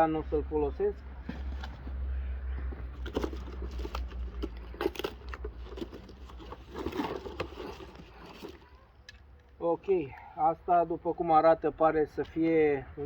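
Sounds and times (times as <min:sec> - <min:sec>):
packaging rustling and crinkling: 0:01.2 - 0:09.3.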